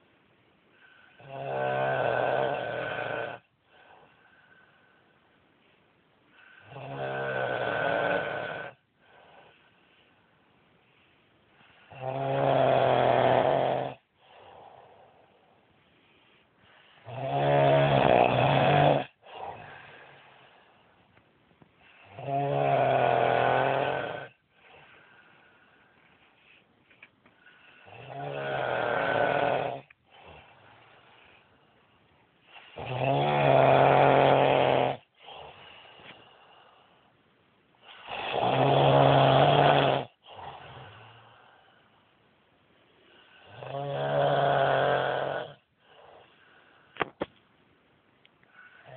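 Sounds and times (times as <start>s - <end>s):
faint breaths: 0.0s - 1.4s, 2.6s - 12.2s, 14.0s - 17.8s, 18.5s - 22.4s, 23.7s - 33.1s, 35.0s - 38.4s, 40.0s - 43.8s, 45.4s - 48.9s
man snoring loudly: 1.1s - 3.5s, 6.6s - 8.8s, 11.9s - 14.0s, 17.0s - 19.9s, 22.0s - 24.4s, 27.8s - 30.4s, 32.6s - 35.6s, 37.9s - 41.3s, 43.4s - 46.1s.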